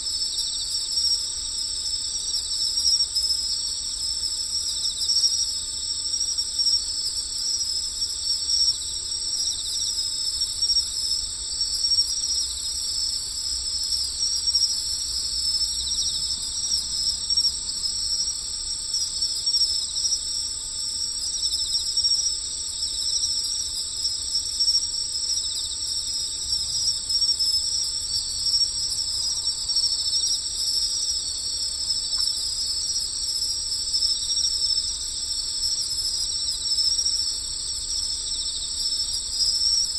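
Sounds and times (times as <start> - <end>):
insects trilling: 0.0 - 39.9.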